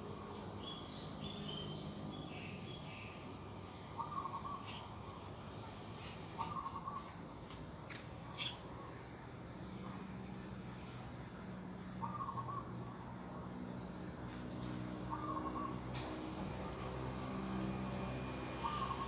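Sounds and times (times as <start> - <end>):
garden birds chirping: 0.0 - 11.0, 11.7 - 19.0
bird low call: 18.6 - 19.0.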